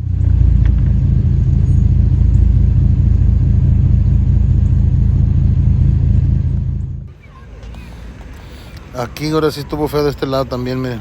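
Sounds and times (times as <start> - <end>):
loud low rumble: 0.0 - 7.1.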